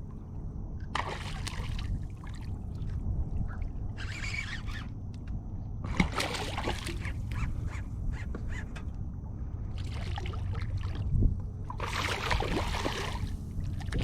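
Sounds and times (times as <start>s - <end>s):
wind rumble on microphone: 0.0s - 14.0s
water splashing around kayak: 0.9s - 2.9s, 5.8s - 7.4s, 9.8s - 14.0s.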